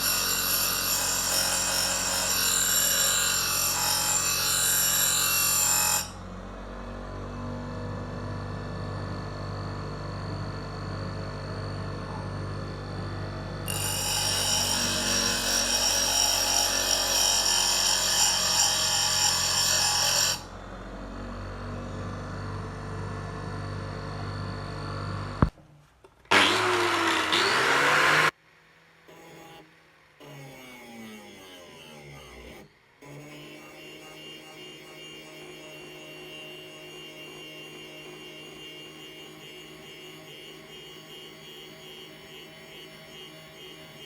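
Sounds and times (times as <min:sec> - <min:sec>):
bench grinder motor hum: 0:00.0 - 0:25.5, 0:26.3 - 0:28.4.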